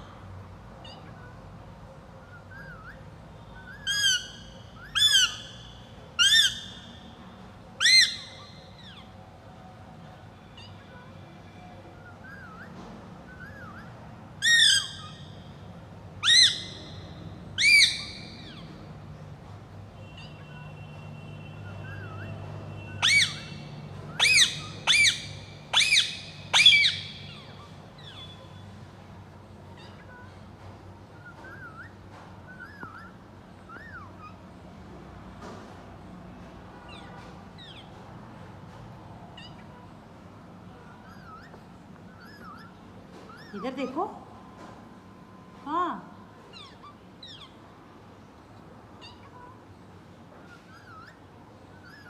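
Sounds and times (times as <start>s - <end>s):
soft bird chirps: 0.0s - 9.4s, 10.0s - 34.6s, 36.8s - 52.0s
parakeet squawking: 0.8s - 1.4s, 2.2s - 7.2s, 7.8s - 9.2s, 10.5s - 11.1s, 11.9s - 15.6s, 16.2s - 18.8s, 20.0s - 20.8s, 21.4s - 28.7s, 29.6s - 30.5s, 31.1s - 34.5s, 36.8s - 38.0s, 39.2s - 40.0s, 40.7s - 44.5s, 45.4s - 48.3s, 48.9s - 52.0s.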